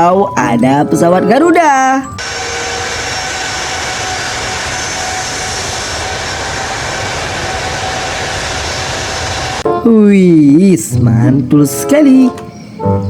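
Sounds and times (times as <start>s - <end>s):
jet engine rushing with high whine: 2.2s - 9.7s.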